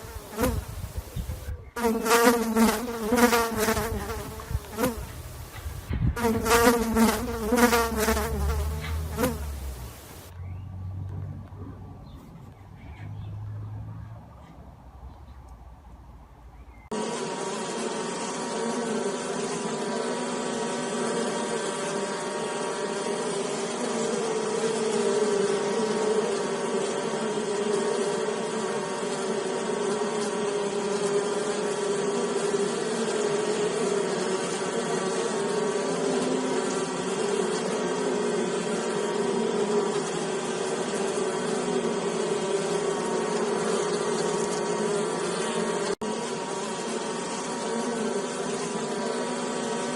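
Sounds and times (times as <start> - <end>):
honey bees buzzing: 0.0 - 10.8, 16.9 - 49.9.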